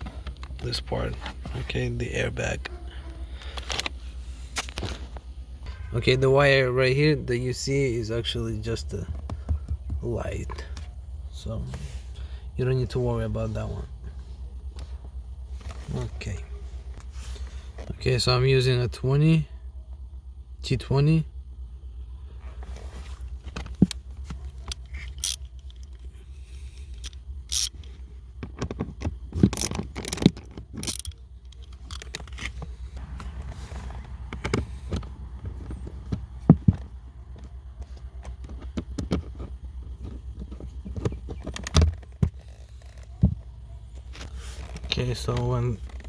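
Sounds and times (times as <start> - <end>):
low steady hum: 0.0 - 46.0
tools clinking and scraping: 22.6 - 36.9.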